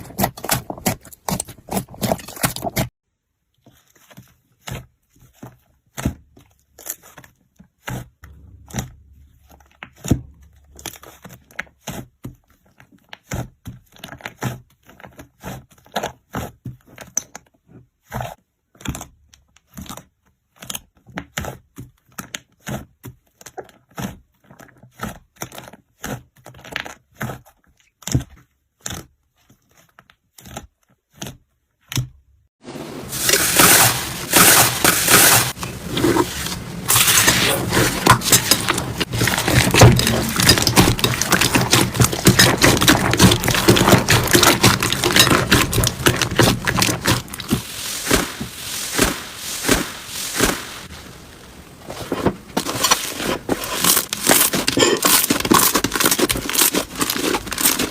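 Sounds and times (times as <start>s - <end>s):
slime popping and crackling: 33.2s - 57.9s.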